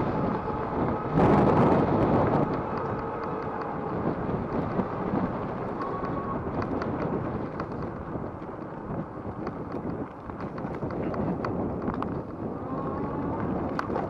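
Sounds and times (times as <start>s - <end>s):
wind buffeting microphone: 0.0s - 14.0s
light clicks and rattles: 2.3s - 12.4s.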